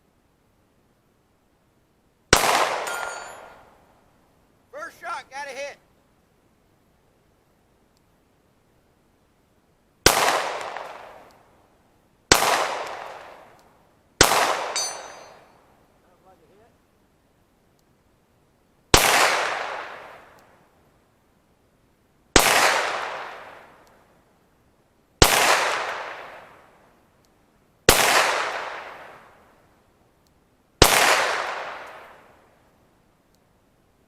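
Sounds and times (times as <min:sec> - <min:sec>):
pistol shots echoing: 0:02.3 - 0:03.6, 0:14.2 - 0:15.4.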